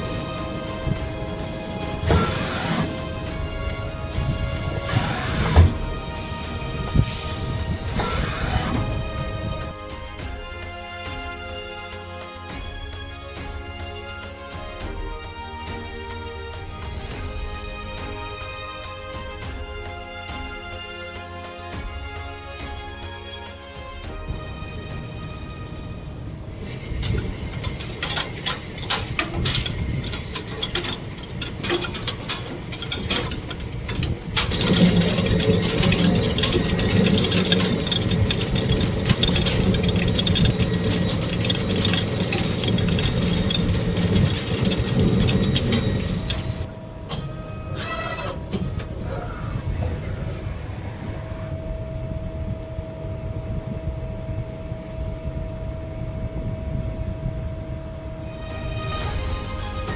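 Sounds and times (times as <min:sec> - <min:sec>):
lathe cutting crackle: 0:00.0 - 0:03.3, 0:04.7 - 0:06.3, 0:07.8 - 0:09.0, 0:26.6 - 0:46.7
steady machine whine: 0:00.0 - 0:10.5, 0:24.4 - 0:59.9
low machine hum: 0:24.8 - 0:59.9
clicks: 0:26.7 - 0:46.7.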